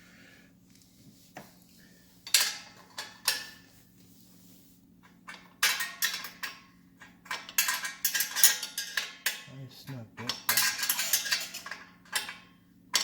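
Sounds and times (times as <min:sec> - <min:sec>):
wrench clinking on metal: 0:10.3 - 0:12.4.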